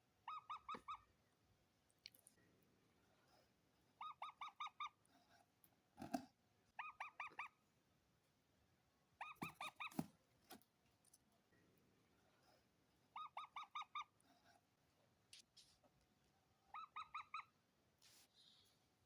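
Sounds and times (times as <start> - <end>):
parakeet shrill calls: 16.7 - 17.5.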